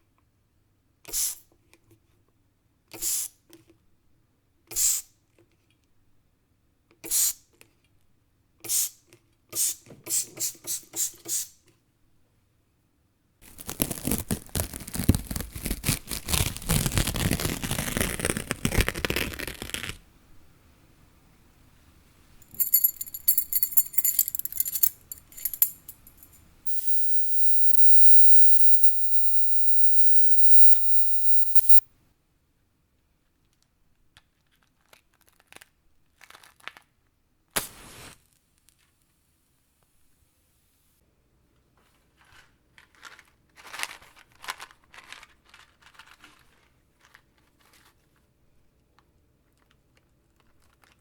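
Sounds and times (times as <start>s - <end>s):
crinkling and crumpling: 13.4s - 19.9s
rattling and jingling: 22.4s - 26.5s.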